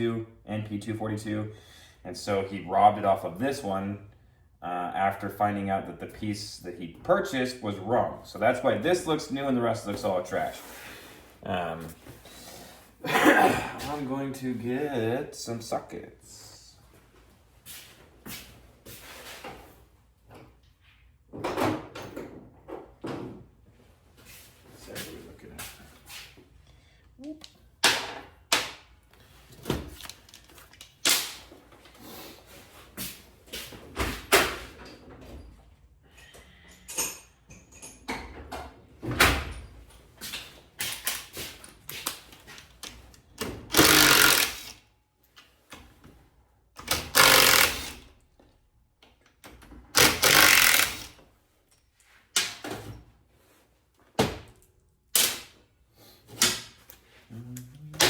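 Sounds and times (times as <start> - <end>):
metal tools clattering: 36.5 - 38.4.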